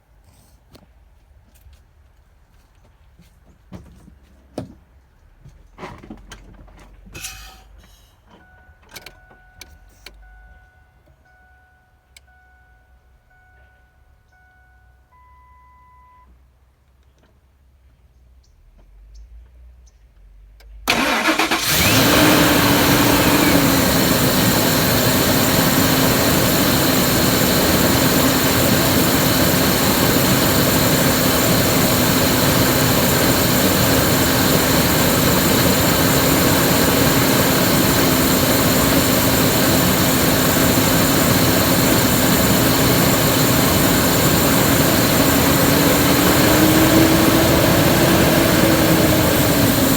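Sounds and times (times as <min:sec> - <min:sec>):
truck engine starting and idling: 0:20.8 - 0:49.9.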